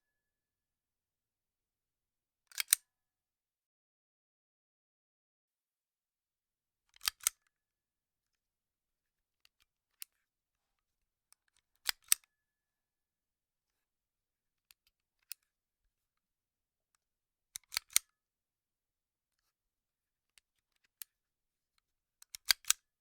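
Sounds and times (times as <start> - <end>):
metallic gun mechanism clicks: 17.6 - 18.0.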